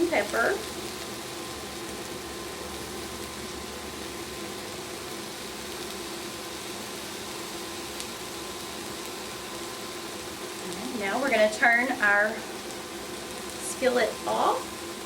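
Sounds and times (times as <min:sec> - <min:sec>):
vegetables and meat sizzling in skillet: 0:00.0 - 0:15.0.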